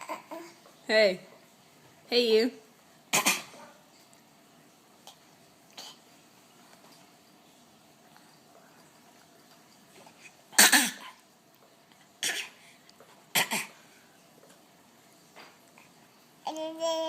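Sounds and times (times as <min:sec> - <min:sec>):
baby fake coughing: 0:03.1 - 0:03.6, 0:10.6 - 0:11.1, 0:12.2 - 0:12.6, 0:13.3 - 0:13.8.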